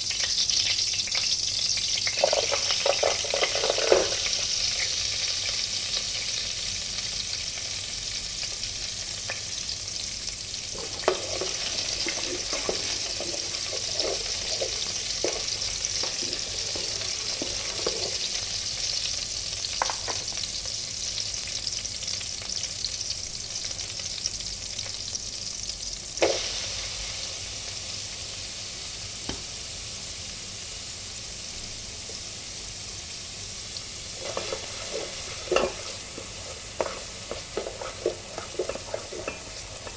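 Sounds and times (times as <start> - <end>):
chicken sizzling in a pan: 0.0 - 39.9
utensil scraping and knocking: 10.8 - 18.2, 34.2 - 39.9.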